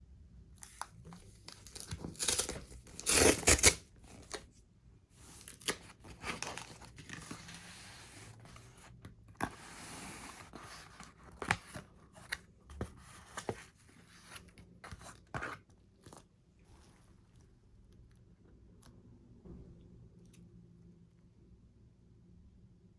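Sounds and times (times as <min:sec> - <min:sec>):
clicks and crinkles of package: 0:00.6 - 0:04.5
packaging tearing: 0:01.4 - 0:04.4, 0:05.4 - 0:07.6.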